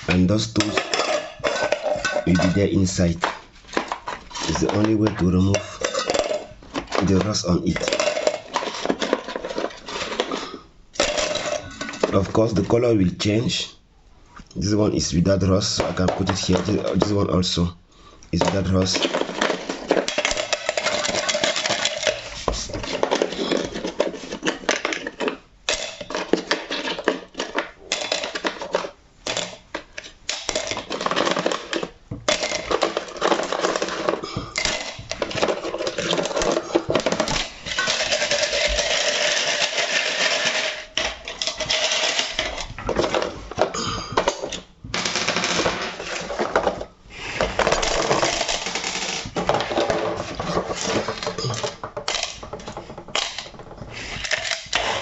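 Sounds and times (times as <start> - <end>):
metal tools rattling in container: 0.1 - 12.2, 30.5 - 43.3.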